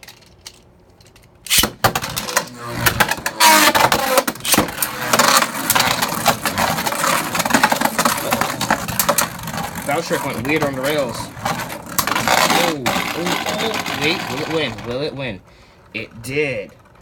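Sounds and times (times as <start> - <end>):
spinning tops launched: 1.4 - 14.8.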